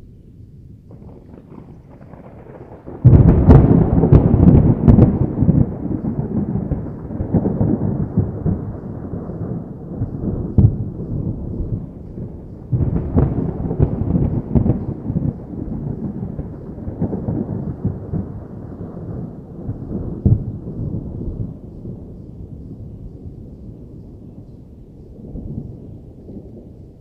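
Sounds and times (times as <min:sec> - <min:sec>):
thunder rumbling: 0:00.0 - 0:27.0
sharp thunder crack: 0:00.9 - 0:22.2.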